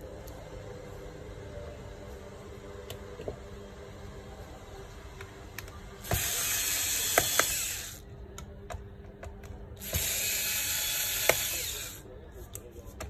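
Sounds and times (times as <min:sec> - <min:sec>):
electric screwdriver whirring: 0:06.0 - 0:08.0, 0:09.8 - 0:12.0.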